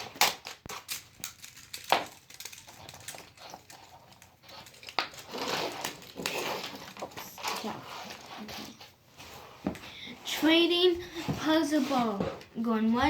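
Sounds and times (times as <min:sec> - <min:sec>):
plastic toys clicking and tapping: 0:00.0 - 0:08.8
rustling: 0:00.0 - 0:09.8.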